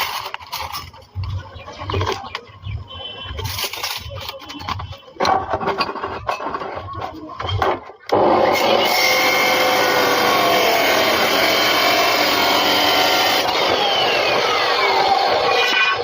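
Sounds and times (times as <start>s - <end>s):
cutting disc grinding through iron: 8.1s - 16.0s.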